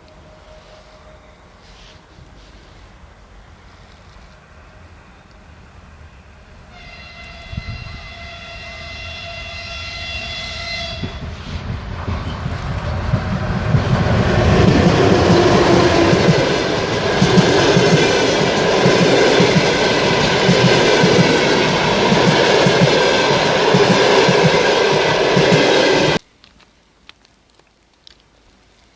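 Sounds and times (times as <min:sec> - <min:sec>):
train horn blast: 0:00.0 - 0:02.6, 0:04.5 - 0:12.4
train wheels clickety-clack: 0:11.0 - 0:26.2.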